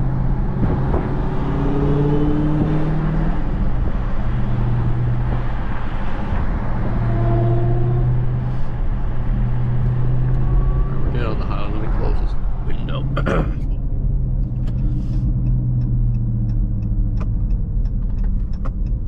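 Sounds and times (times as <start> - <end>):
car engine low drone: 0.0 - 19.0.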